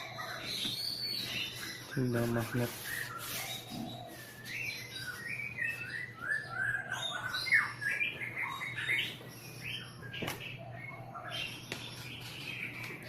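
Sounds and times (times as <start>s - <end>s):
songbird chirping and whistling: 0.0s - 13.0s.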